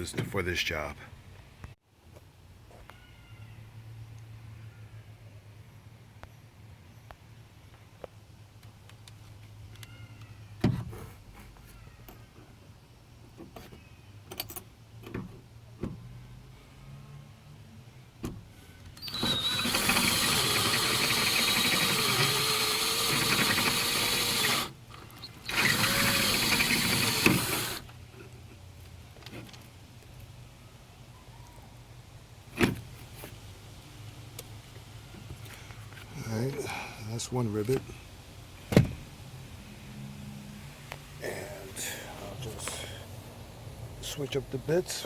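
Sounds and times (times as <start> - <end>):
power drill drilling: 19.0 - 27.9.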